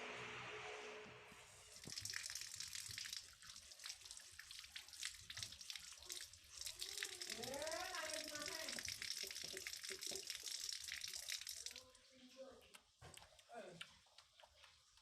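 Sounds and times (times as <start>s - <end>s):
tap water splashing into sink: 1.8s - 11.8s.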